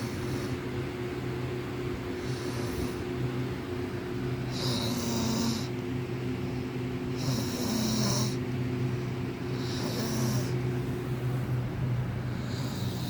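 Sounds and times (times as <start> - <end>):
steady low hum: 0.0 - 13.0
man snoring: 2.2 - 3.0, 4.5 - 5.7, 7.1 - 8.4, 9.5 - 10.6, 12.3 - 13.0.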